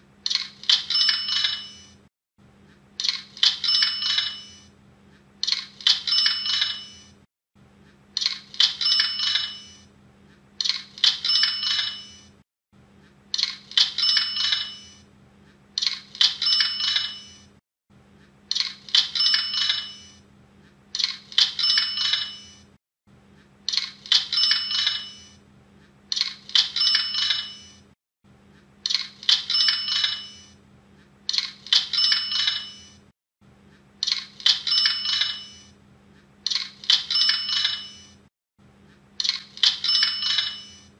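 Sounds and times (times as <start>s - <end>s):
cash register clicks and bell: 0.7s - 2.0s, 3.4s - 4.7s, 5.8s - 7.2s, 8.6s - 9.9s, 11.0s - 12.4s, 13.8s - 15.0s, 16.2s - 17.5s, 19.0s - 20.2s, 21.4s - 22.7s, 24.1s - 25.4s, 26.5s - 27.9s, 29.3s - 30.6s, 31.7s - 33.0s, 34.4s - 35.7s, 36.9s - 38.2s, 39.6s - 40.9s.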